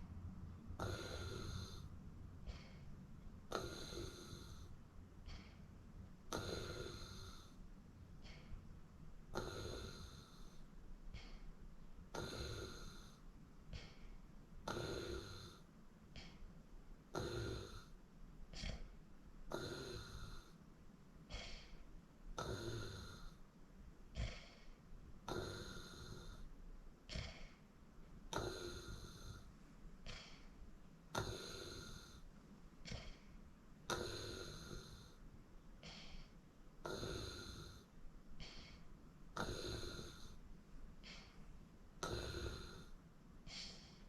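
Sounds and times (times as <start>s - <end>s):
person snoring: 0.8s - 2.9s, 3.5s - 4.7s, 6.3s - 7.6s, 9.3s - 10.6s, 12.1s - 14.0s, 14.7s - 15.6s, 17.1s - 18.0s, 19.5s - 20.6s, 22.4s - 23.4s, 24.2s - 26.5s, 27.1s - 27.6s, 28.3s - 30.5s, 31.1s - 33.3s, 33.9s - 35.2s, 35.8s - 38.8s, 39.4s - 40.4s, 41.0s - 41.4s, 42.0s - 44.0s.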